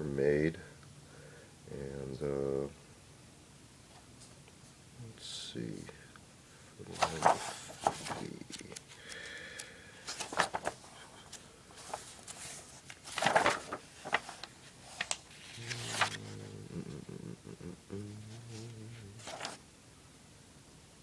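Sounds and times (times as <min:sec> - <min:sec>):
paper pages rustling: 0:06.9 - 0:16.4, 0:19.2 - 0:19.6
man's voice humming low: 0:15.5 - 0:19.6.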